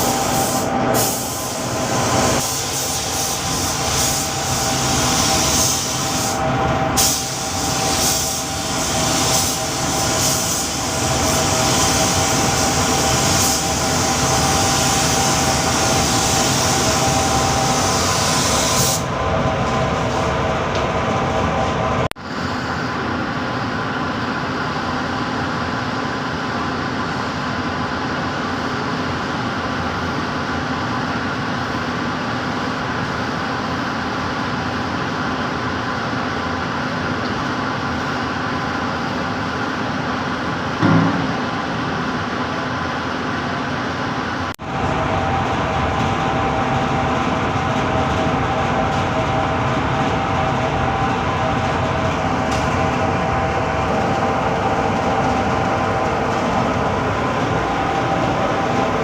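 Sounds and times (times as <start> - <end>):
machine hissing: 0.0 - 19.3.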